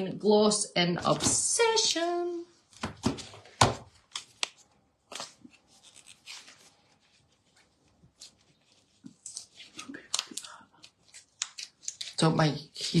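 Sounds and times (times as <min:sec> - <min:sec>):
soft rustling: 0:04.6 - 0:11.3.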